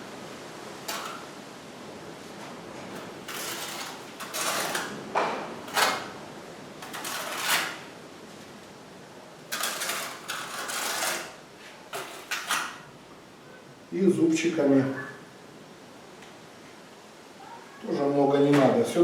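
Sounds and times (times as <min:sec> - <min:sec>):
trowel scraping adhesive on stone: 0:00.8 - 0:01.3, 0:02.9 - 0:05.0, 0:05.6 - 0:06.2, 0:06.8 - 0:07.9, 0:09.5 - 0:12.9.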